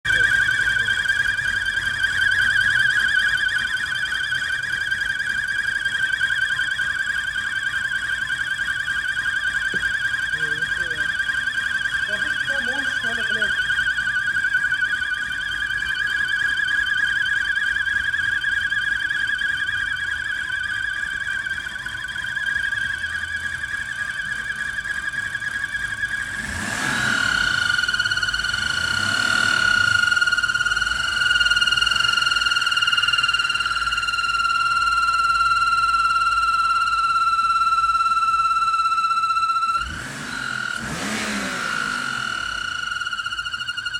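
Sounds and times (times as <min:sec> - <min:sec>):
engine high warbling whistle: 0:00.0 - 0:43.9
car engine running: 0:24.4 - 0:33.2, 0:39.8 - 0:43.9.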